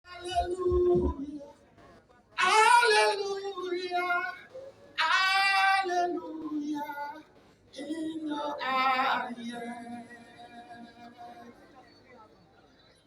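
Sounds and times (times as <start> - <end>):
woman singing gospel: 0.1 - 1.5, 7.8 - 11.3.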